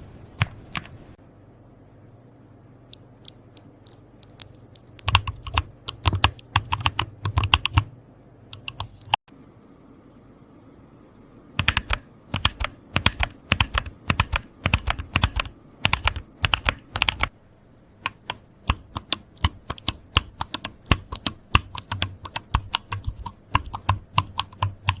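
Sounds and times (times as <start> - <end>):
keyboard typing: 0.4 - 1.0, 2.9 - 7.9, 8.5 - 9.2, 11.6 - 17.3, 18.0 - 25.0.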